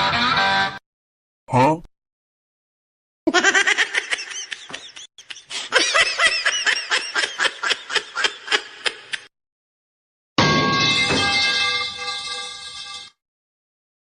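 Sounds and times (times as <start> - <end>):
person laughing: 3.3 - 9.3.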